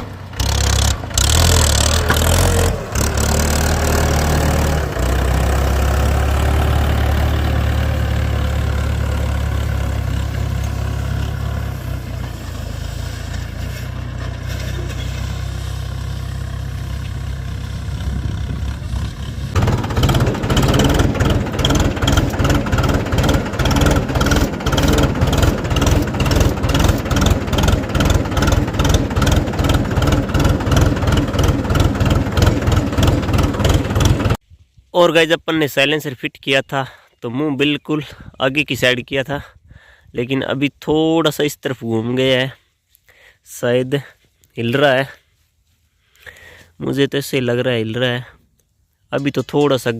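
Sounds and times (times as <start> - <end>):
tractor diesel engine: 0.0 - 34.4.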